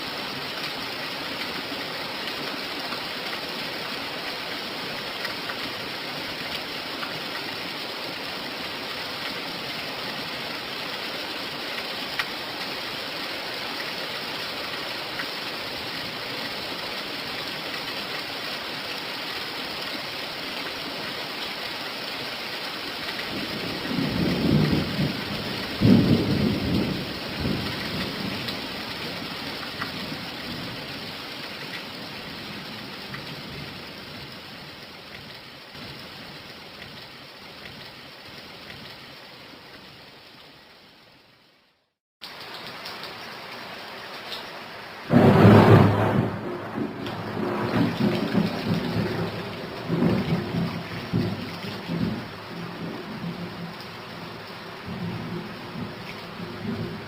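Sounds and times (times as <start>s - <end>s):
steady rain: 0.0s - 57.0s
thunder rumbling and cracking: 23.3s - 29.2s, 45.1s - 53.8s.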